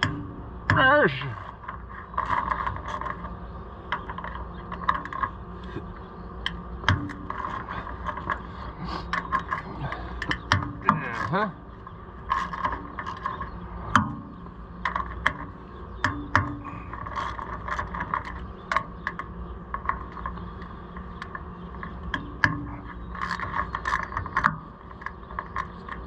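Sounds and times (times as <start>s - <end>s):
sharp metal knocks: 0.0s - 1.0s, 10.2s - 11.5s, 12.4s - 16.8s.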